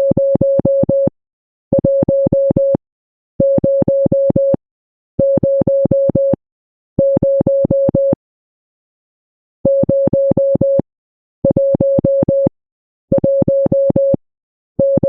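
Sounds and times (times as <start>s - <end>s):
morse code beeps: 7.0s - 8.2s, 9.7s - 10.8s, 13.1s - 14.2s, 14.8s - 15.0s.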